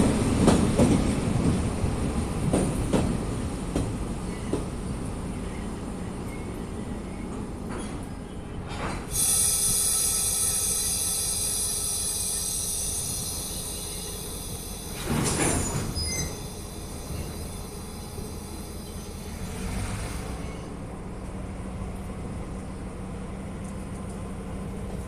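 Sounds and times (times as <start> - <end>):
freight train cars rumbling: 0.0 - 25.0
train wheel squeal: 5.4 - 20.8.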